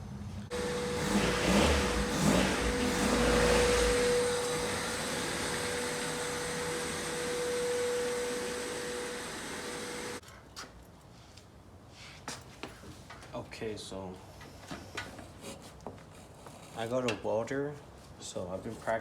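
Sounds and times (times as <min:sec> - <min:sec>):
machine whining: 0:00.5 - 0:10.2.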